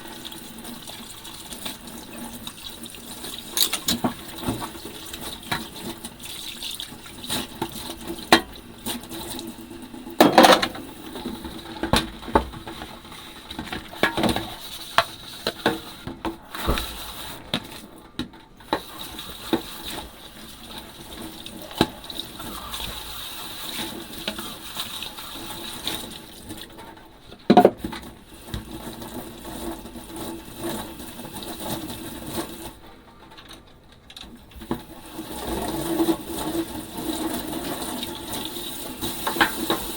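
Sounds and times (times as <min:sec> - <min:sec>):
running water in sink: 0:00.0 - 0:32.9, 0:34.2 - 0:39.9
dishes clinking and knocking: 0:03.6 - 0:04.7, 0:10.2 - 0:10.9.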